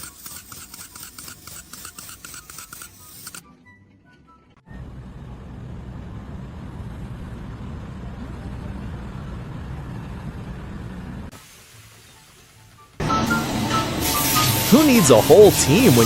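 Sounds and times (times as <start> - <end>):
engine rumbling: 4.7 - 11.3, 13.0 - 16.0.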